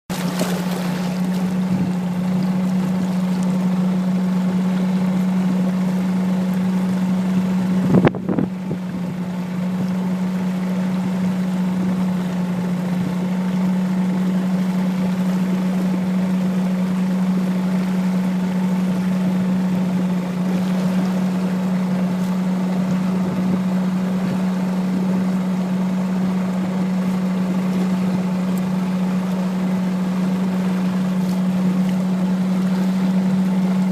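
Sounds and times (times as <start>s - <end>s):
motorboat engine droning: 0.0s - 33.9s
water wash: 0.1s - 33.9s
wind noise: 7.7s - 9.3s.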